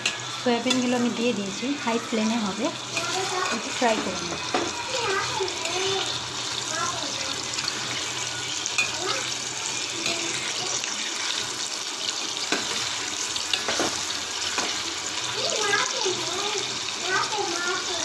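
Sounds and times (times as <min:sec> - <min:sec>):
food sizzling in hot oil: 0:00.0 - 0:18.0.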